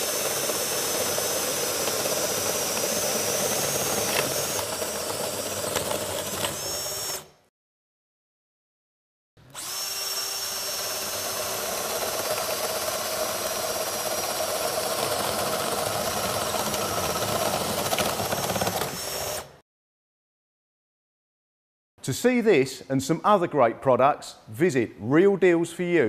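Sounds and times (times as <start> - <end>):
power drill boring into wood: 0.0 - 7.4, 9.5 - 19.6.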